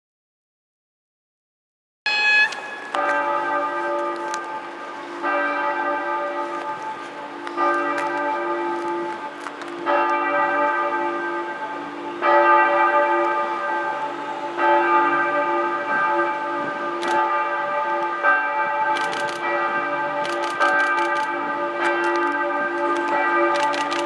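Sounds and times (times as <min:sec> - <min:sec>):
church bells pealing: 0:02.1 - 0:24.0
sharp clicks: 0:17.0 - 0:17.3, 0:19.0 - 0:19.5, 0:20.2 - 0:24.0.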